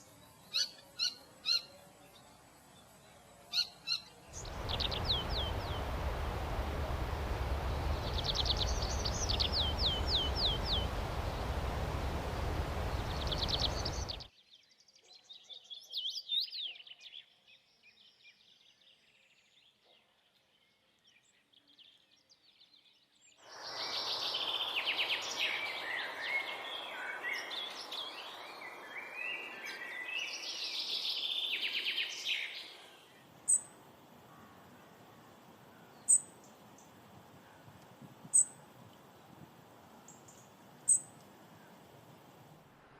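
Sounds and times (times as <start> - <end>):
songbirds singing: 0.0 - 19.8, 20.5 - 42.5
birds chirping and twittering: 0.2 - 15.1, 22.9 - 42.5
steady low rumble: 4.4 - 14.3.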